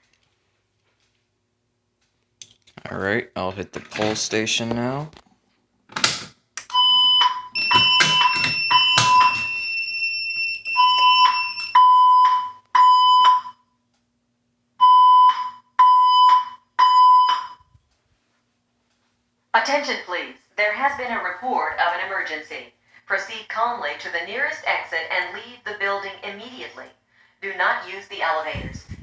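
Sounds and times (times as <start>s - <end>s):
fire alarm pull station clack: 6.0s - 13.5s
high steady alarm tone: 6.7s - 13.6s, 14.8s - 17.7s
fire alarm pulsing tone: 6.7s - 13.8s, 14.8s - 17.8s.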